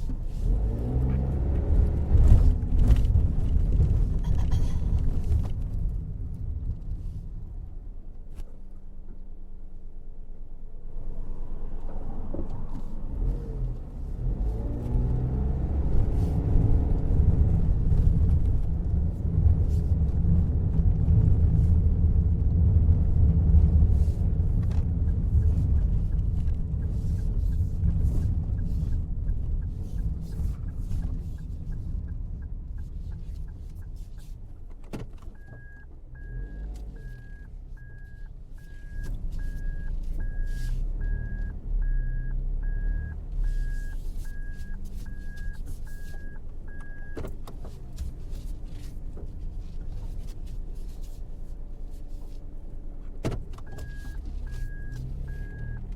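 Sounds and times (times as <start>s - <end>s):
car engine and road rumble: 0.0s - 55.9s
dashboard warning beeps: 35.3s - 47.5s, 53.5s - 55.9s.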